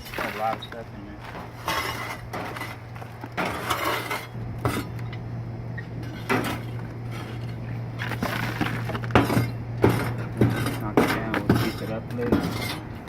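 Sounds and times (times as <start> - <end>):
metal parts clinking and rattling: 0.0 - 5.2, 6.0 - 13.0
steady low hum: 0.0 - 13.0.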